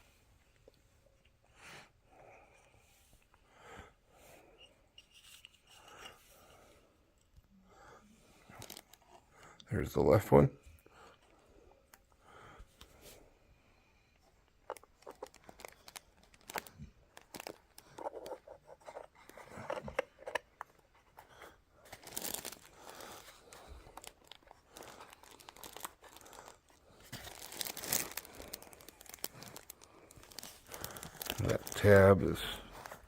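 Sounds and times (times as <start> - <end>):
plastic packaging crinkling: 8.5 - 9.1, 14.6 - 18.6, 21.8 - 33.0.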